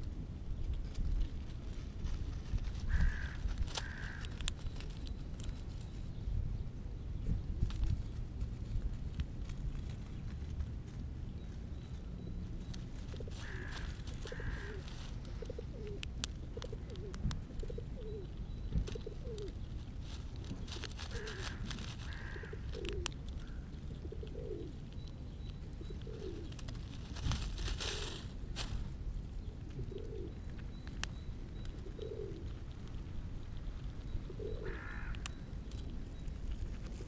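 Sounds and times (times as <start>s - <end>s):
rustling: 7.6s - 17.6s, 18.2s - 25.0s, 25.9s - 37.0s
pigeon calling: 13.0s - 20.0s, 20.7s - 24.9s, 25.5s - 28.4s, 29.5s - 32.7s, 33.5s - 36.6s.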